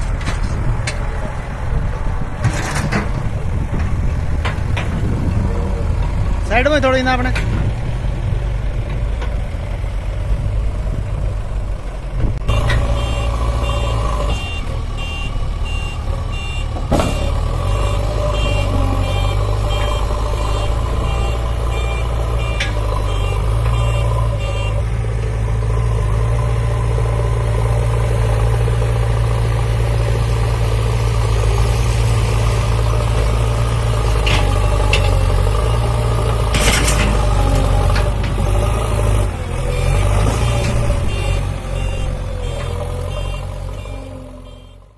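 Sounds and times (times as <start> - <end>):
diesel machinery running: 0.0 - 44.9
reversing alarm beeping: 12.5 - 24.8, 39.6 - 44.9.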